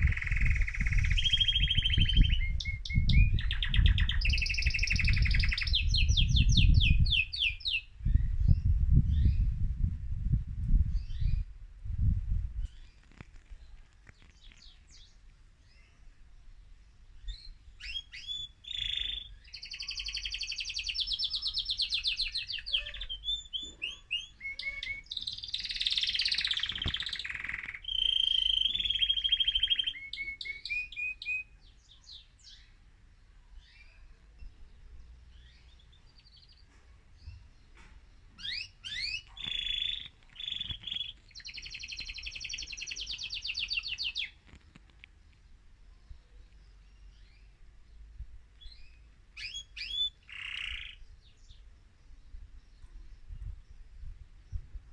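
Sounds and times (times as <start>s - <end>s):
canary singing trills: 0.0s - 9.5s, 17.2s - 32.8s, 35.3s - 44.5s, 46.1s - 53.9s.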